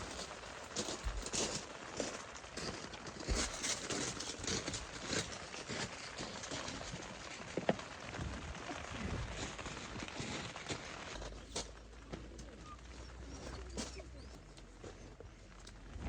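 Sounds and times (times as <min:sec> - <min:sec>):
wind buffeting microphone: 0:08.2 - 0:09.7.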